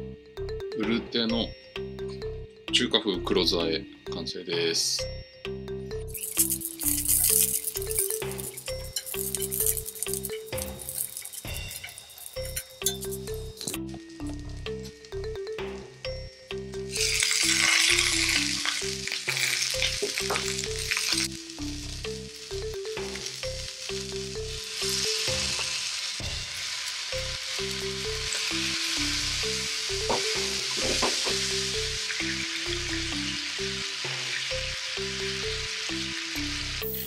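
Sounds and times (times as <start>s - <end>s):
background music: 0.0s - 37.0s
food sizzling in frying pan: 6.1s - 13.8s, 16.8s - 37.0s
utensil clicking on pan: 6.2s - 13.8s.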